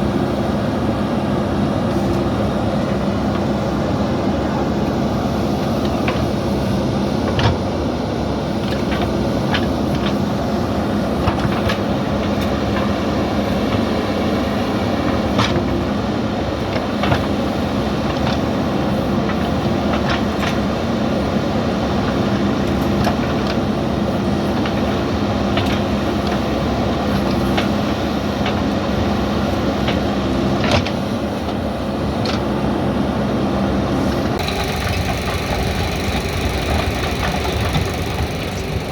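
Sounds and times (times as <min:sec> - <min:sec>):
diesel engine running: 0:00.0 - 0:16.2, 0:31.5 - 0:38.9.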